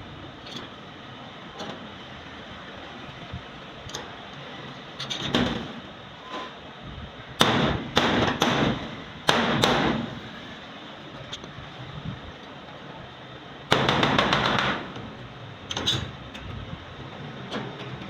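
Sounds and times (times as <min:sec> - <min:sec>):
hammer striking sheet steel: 0:07.4 - 0:10.2.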